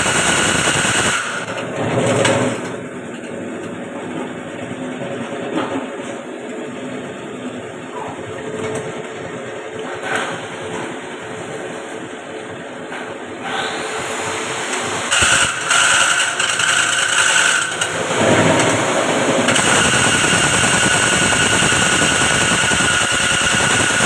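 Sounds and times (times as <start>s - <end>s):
milling machine whining: 12.1s - 24.0s.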